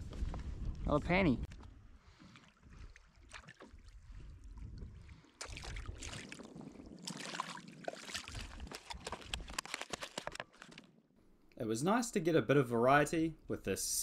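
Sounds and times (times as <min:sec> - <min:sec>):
water splashing around kayak: 0:01.5 - 0:10.6.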